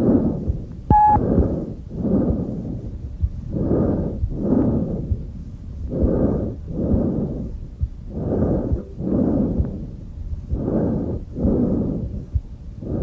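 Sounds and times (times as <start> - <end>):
harsh hollow breathing: 0.0 - 13.0.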